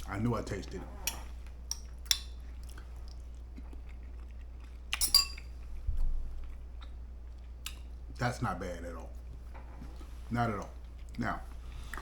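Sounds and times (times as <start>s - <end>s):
utensil clinking against bowl: 5.0s - 5.5s.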